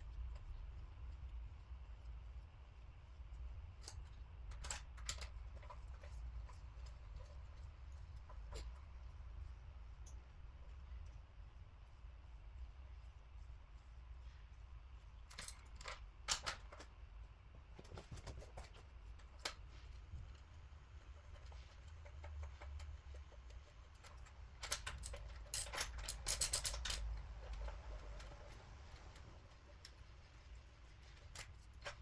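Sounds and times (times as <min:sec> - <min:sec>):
faint low hum: 0:00.0 - 0:32.0
metal tools clinking: 0:24.6 - 0:27.1.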